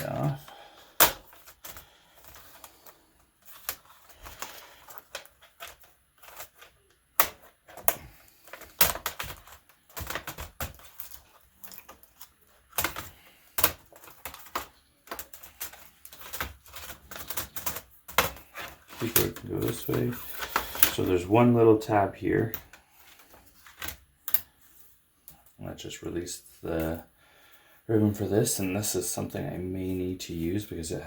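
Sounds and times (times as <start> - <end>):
plastic clips snapping: 1.0 - 2.7.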